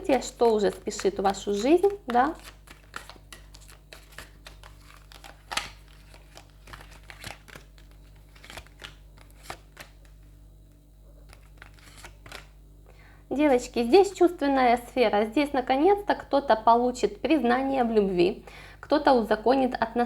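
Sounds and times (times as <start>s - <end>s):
cards clicking and rustling: 0.0s - 10.4s, 11.2s - 12.6s
card snap: 0.1s - 10.2s, 11.3s - 12.5s.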